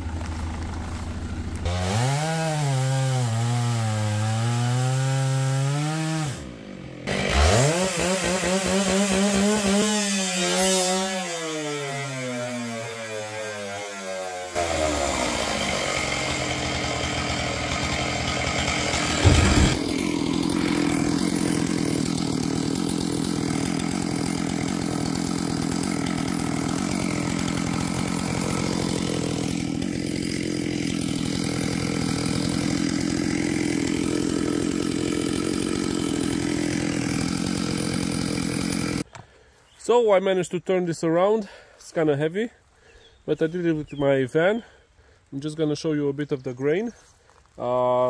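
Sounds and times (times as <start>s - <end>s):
chainsaw cutting log: 0.0s - 39.3s
loud knock: 19.2s - 19.8s.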